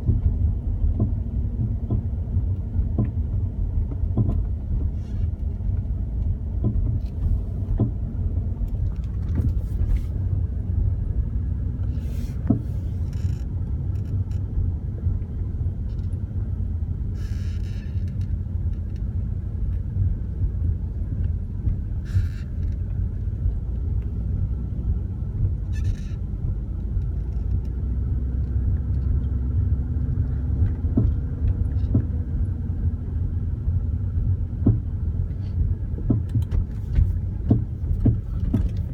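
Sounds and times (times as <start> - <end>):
car driving with low rumble: 0.0 - 38.9
car clunking knocks: 6.6 - 8.1, 34.6 - 34.9, 36.0 - 38.9.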